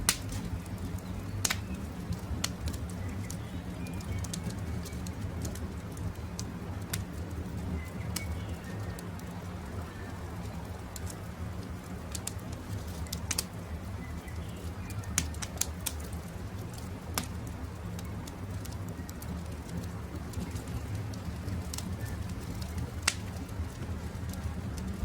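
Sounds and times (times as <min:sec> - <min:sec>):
low rumble: 0:00.0 - 0:00.7
campfire crackling and popping: 0:00.0 - 0:25.0.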